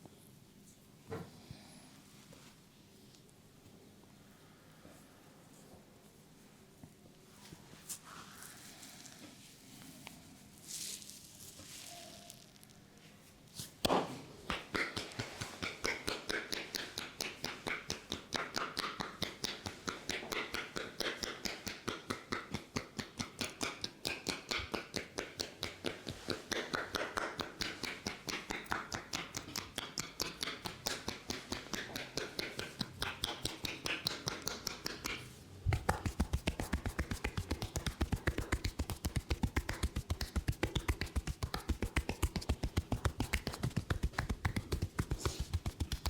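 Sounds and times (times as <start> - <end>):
hands tapping on head: 14.5 - 46.0.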